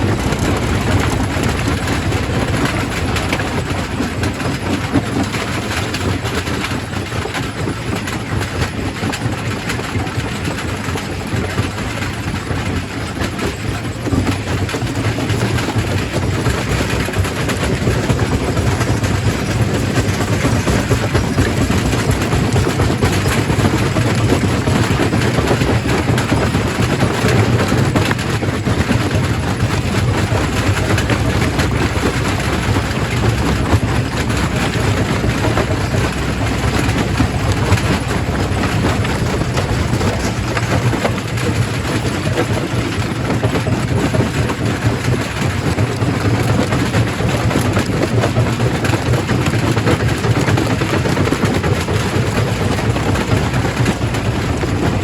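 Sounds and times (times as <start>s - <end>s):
rock crusher drone: 0.0s - 7.0s, 13.9s - 44.2s
rocks rattling and clattering: 0.0s - 55.0s.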